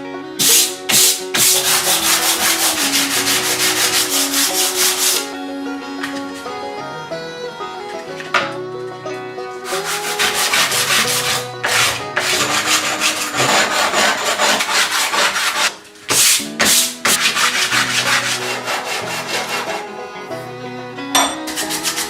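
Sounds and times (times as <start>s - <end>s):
background music: 0.0s - 22.0s
sanding metal: 0.4s - 5.3s, 9.6s - 19.9s, 21.5s - 22.0s.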